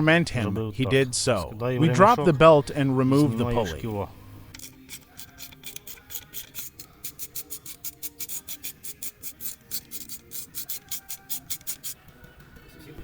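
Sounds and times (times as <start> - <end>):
ratchet wrench clicking: 4.5 - 12.0.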